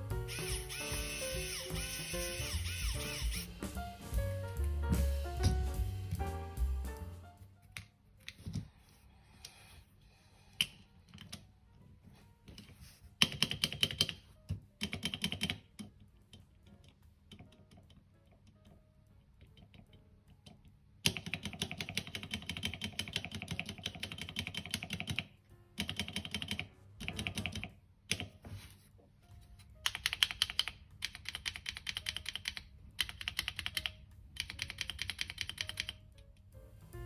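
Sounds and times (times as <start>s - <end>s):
faint background music: 0.0s - 37.0s
mechanical keyboard keys clacking: 13.2s - 16.0s, 21.0s - 28.4s, 29.8s - 36.2s.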